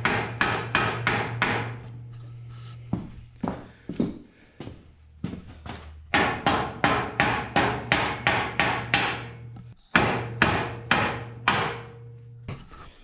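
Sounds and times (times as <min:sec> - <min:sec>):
hammer striking steel tube: 0:00.0 - 0:01.8, 0:06.1 - 0:12.1.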